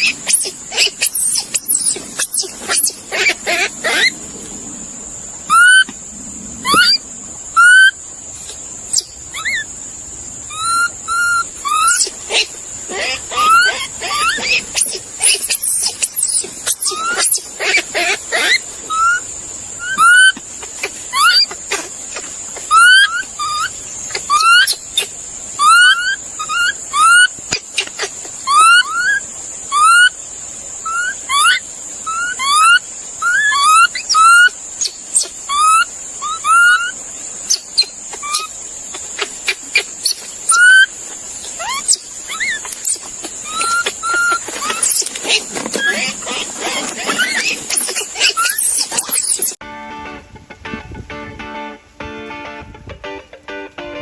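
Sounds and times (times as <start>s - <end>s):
steady high-pitched hiss: 0.0s - 54.0s
animal short rising squeaks: 6.6s - 7.0s, 10.5s - 19.2s, 41.6s - 49.6s.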